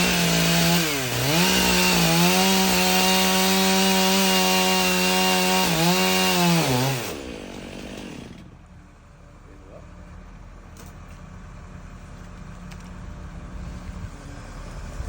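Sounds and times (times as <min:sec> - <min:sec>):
chainsaw cutting at full throttle: 0:00.0 - 0:08.6.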